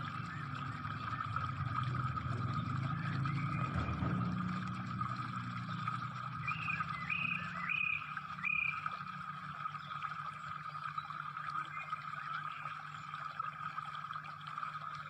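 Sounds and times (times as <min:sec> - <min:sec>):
low rumble: 0:00.0 - 0:06.5.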